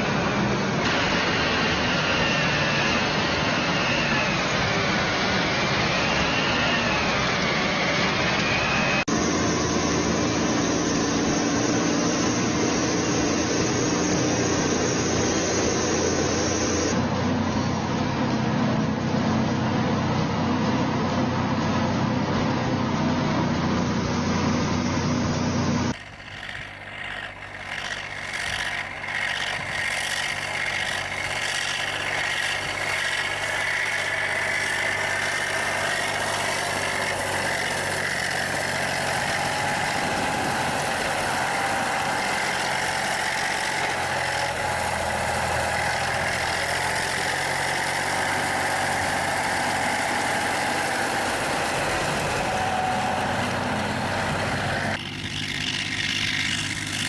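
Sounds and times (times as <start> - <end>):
heavy vehicle engines running: 0.0 - 57.0
engine revving with ticking: 25.8 - 57.0.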